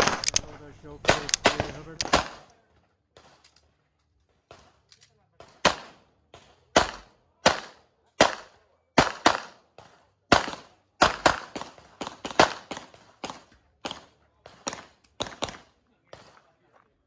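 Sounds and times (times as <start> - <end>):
handgun shots: 0.0 - 2.5.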